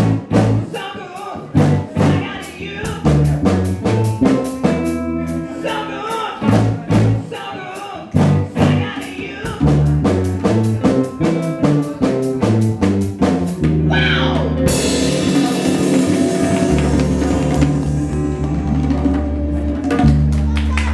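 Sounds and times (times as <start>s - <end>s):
bass and guitar: 0.0s - 0.8s, 1.4s - 20.9s
drum beats: 0.0s - 20.9s
person singing: 4.5s - 6.6s, 13.9s - 20.0s
cymbal wash: 14.8s - 19.2s.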